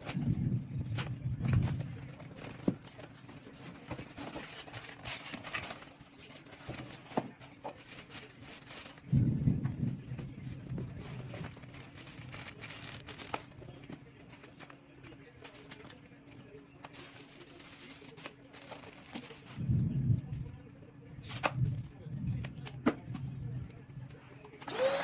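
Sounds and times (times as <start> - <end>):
plastic packaging rustling: 1.0 - 9.1, 10.0 - 16.1, 16.8 - 19.6.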